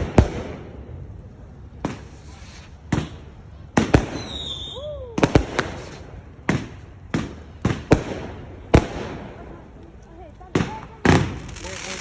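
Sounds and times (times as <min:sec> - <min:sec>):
fireworks banging: 0:00.0 - 0:12.0
firework whistle: 0:04.0 - 0:06.0.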